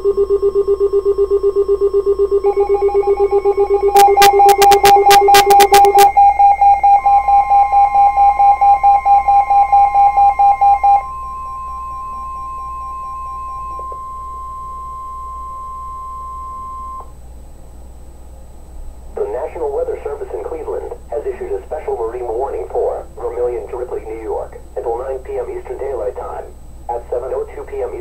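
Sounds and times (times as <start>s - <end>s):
rapid pulsing alert beeps: 0.0s - 6.5s
weather radio alarm tone: 1.9s - 17.0s
faint radio hiss: 17.4s - 28.0s.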